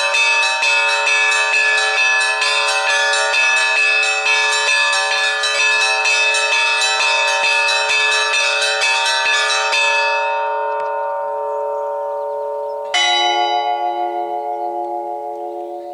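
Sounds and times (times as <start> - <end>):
small church bells ringing: 0.0 - 15.9
deep bell stroke: 10.2 - 15.9.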